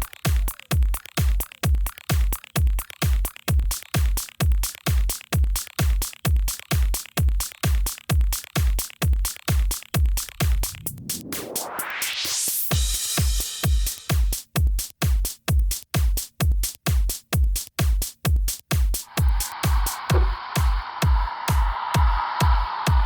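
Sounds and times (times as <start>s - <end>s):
steady kick drum: 0.0s - 11.8s, 12.6s - 23.0s
rising synth sweep: 10.6s - 12.7s
electronic dance music: 19.1s - 23.0s.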